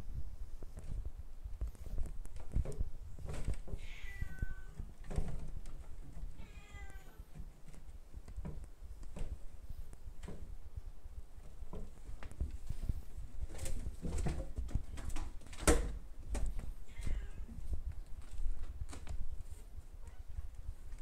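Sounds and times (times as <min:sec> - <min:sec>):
rustling and handling noise: 0:00.0 - 0:21.0
cat meowing: 0:03.8 - 0:04.9, 0:06.4 - 0:07.3, 0:16.9 - 0:17.6.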